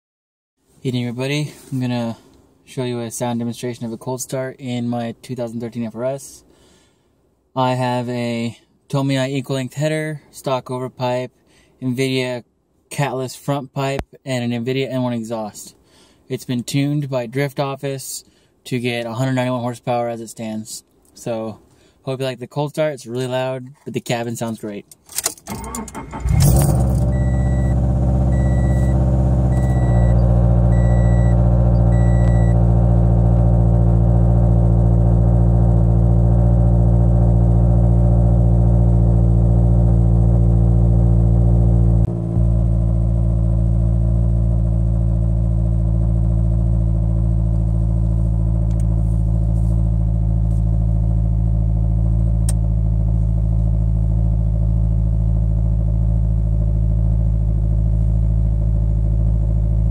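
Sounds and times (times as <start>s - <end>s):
car engine starting and idling: 25.0s - 59.9s
faint repeating beep: 27.2s - 32.6s.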